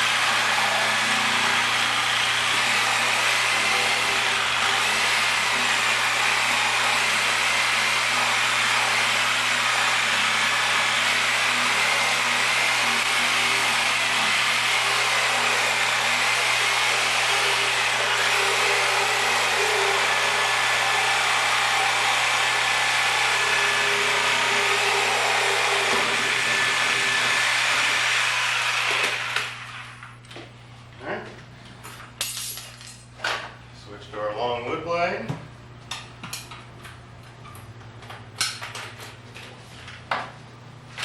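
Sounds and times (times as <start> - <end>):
electric saw cutting rubber: 0.0 - 30.0.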